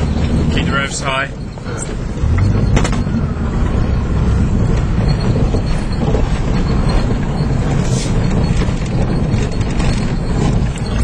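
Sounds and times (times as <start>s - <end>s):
car engine at high revs: 0.0s - 11.0s.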